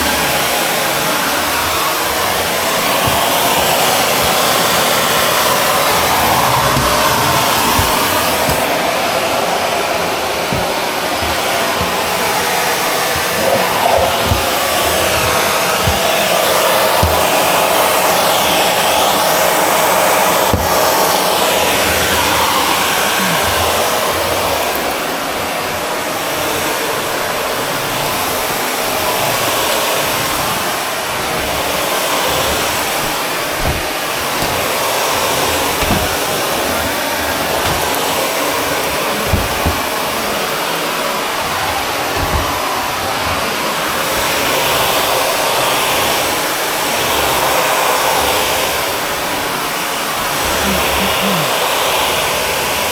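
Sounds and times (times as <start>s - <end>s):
vacuum cleaner running: 0.0s - 52.9s
light knocks: 2.9s - 8.9s, 31.3s - 40.1s.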